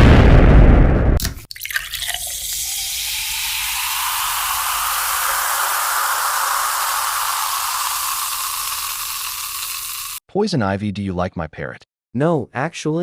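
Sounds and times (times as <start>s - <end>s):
steady hiss: 2.7s - 10.2s.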